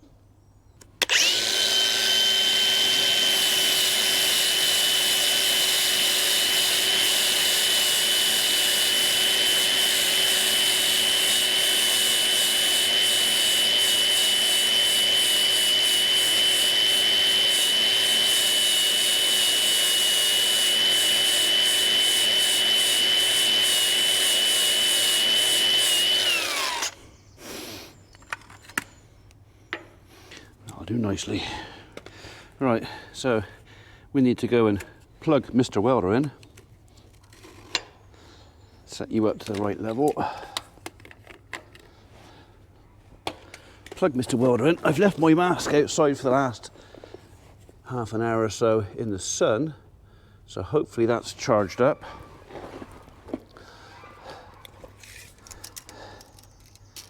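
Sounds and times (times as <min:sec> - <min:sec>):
grinder spinning down: 0:01.0 - 0:27.0
angle grinder whining: 0:01.0 - 0:27.1.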